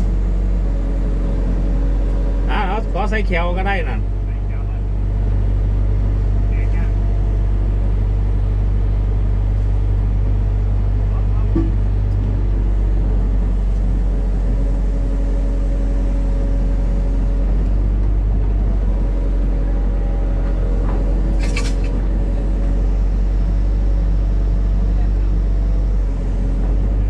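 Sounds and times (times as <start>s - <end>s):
excavator diesel engine running: 0.0s - 27.0s
sharp metal clank: 21.4s - 22.0s.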